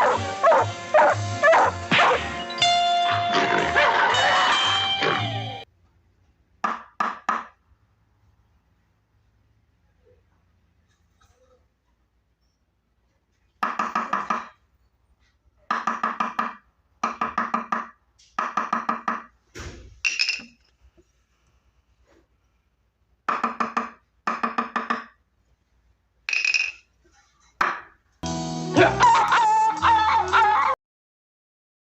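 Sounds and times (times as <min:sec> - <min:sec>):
music: 0:00.0 - 0:05.6, 0:28.2 - 0:30.8.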